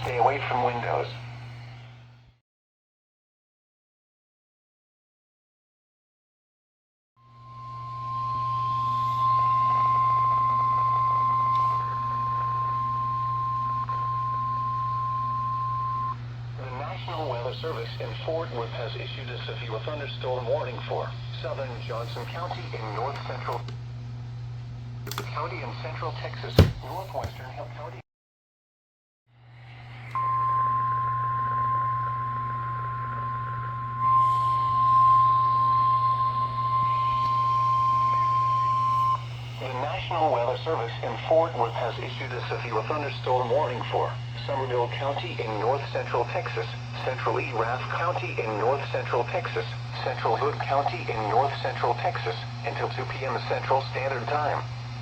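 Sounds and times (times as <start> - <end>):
steady high alarm tone: 7.2 - 16.2, 30.2 - 42.3.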